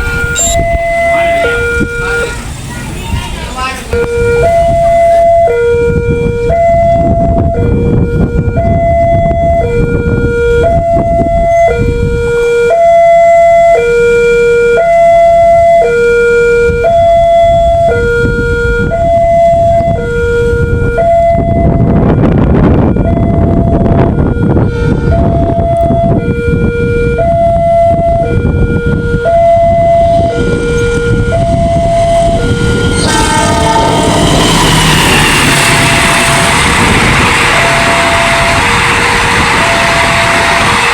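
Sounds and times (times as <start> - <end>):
two-tone warning siren: 0.0 - 40.9
low rumble: 28.8 - 40.9.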